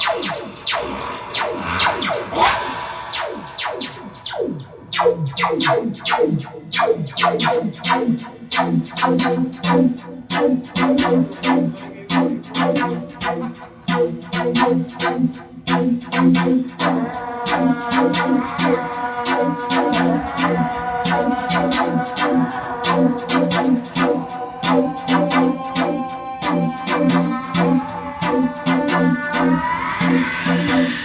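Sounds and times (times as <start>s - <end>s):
electronic notes dropping in pitch: 0.0s - 5.8s
low sustained drone: 0.7s - 4.5s.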